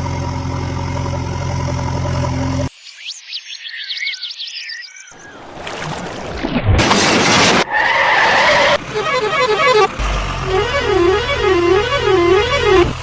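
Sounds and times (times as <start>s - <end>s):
low engine hum: 0.0s - 2.7s, 8.8s - 13.0s
steady horn-like tone: 8.9s - 13.0s
siren warbling and wailing: 10.5s - 13.0s.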